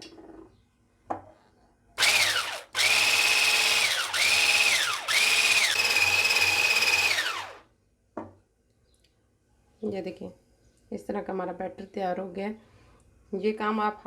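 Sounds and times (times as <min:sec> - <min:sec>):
electric hand beater whirring: 0:02.0 - 0:07.6.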